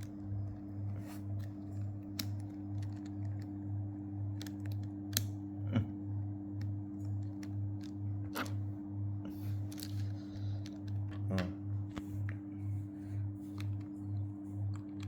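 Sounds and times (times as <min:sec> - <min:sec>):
steady low hum: 0:00.0 - 0:15.0
plastic puzzle pieces clicking: 0:01.4 - 0:03.6.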